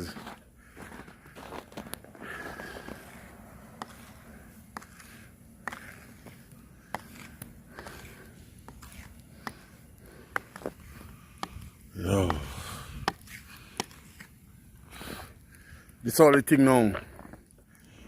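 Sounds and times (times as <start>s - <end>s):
snow scraper scraping ice: 1.4s - 11.6s.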